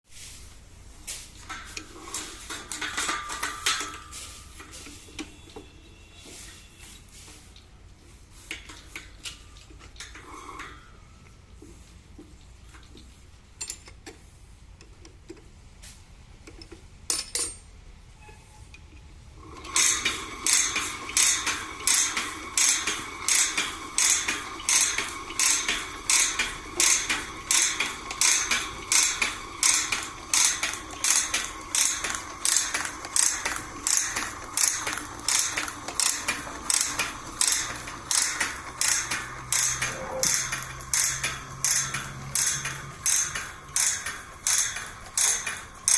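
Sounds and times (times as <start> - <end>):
machine sharp metallic clicks: 19.6 - 45.9.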